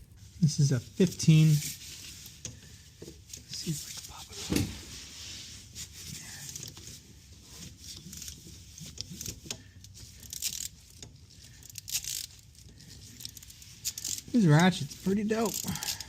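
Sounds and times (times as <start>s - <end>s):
ratchet clicking and rattling: 6.4s - 16.0s.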